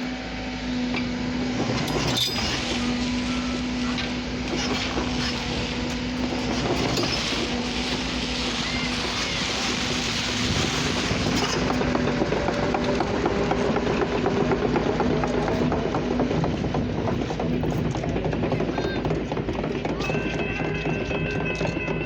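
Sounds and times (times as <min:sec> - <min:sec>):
train rolling past: 0:00.0 - 0:22.0.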